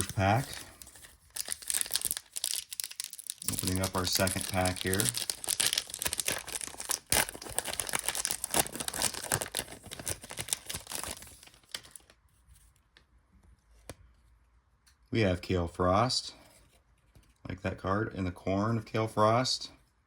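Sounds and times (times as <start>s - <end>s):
wrapper tearing and crinkling: 0.0s - 12.1s.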